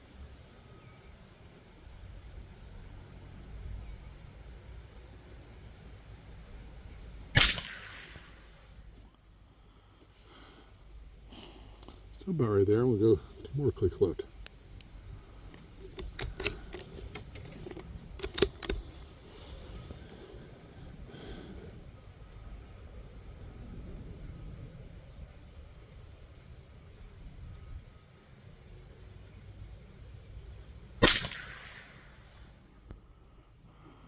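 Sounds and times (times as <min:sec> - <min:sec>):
rifle shot with ring: 0:07.3 - 0:08.7, 0:15.9 - 0:19.0, 0:31.0 - 0:32.4
scope adjustment clicks: 0:14.4 - 0:21.5.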